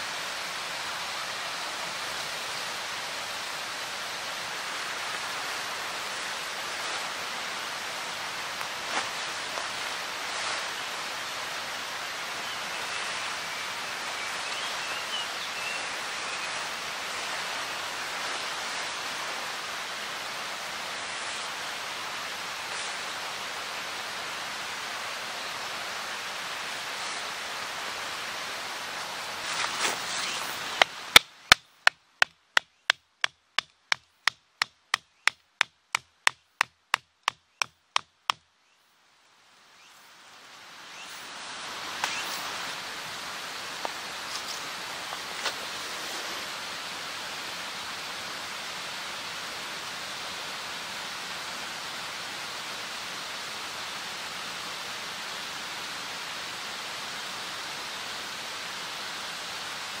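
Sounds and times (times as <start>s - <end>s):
chopping on wood: 30.8s - 38.4s.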